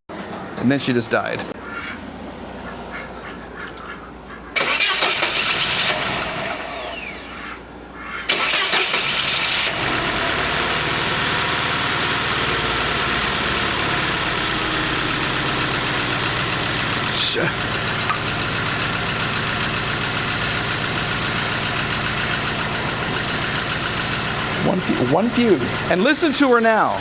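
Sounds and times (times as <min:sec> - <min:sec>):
car engine starting and idling: 0:04.6 - 0:07.4, 0:08.3 - 0:27.0.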